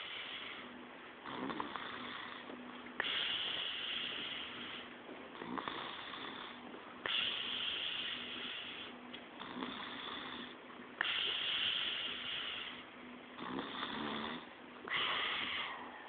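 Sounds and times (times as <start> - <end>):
man snoring heavily: 1.2 - 2.4, 5.4 - 6.6, 9.4 - 10.6, 13.4 - 15.7.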